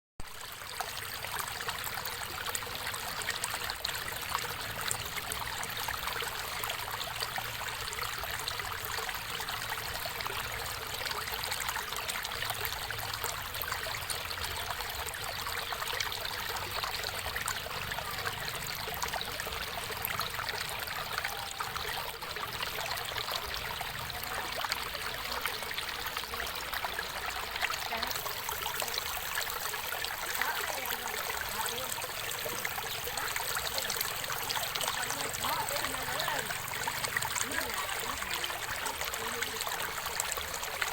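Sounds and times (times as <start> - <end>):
stream water running: 0.2 - 40.9.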